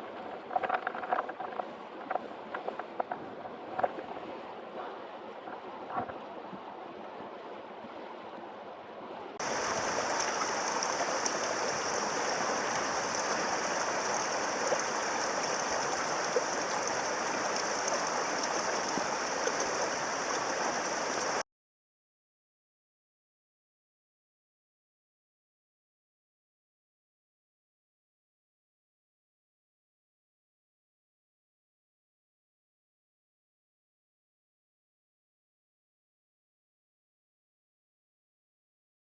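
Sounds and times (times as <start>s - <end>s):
stream water rushing: 3.5s - 21.4s.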